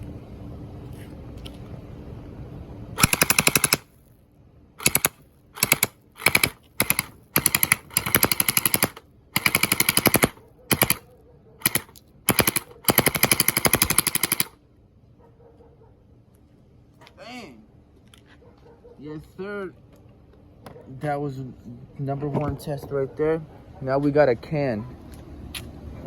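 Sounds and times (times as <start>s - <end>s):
gel-ball blaster firing bursts: 3.0s - 3.9s, 4.8s - 11.0s, 11.6s - 14.6s.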